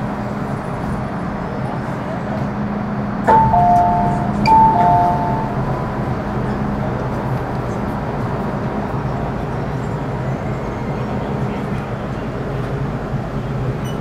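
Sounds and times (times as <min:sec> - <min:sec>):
train rumbling in tunnel: 0:00.0 - 0:14.0
two-note falling chime: 0:03.3 - 0:05.8.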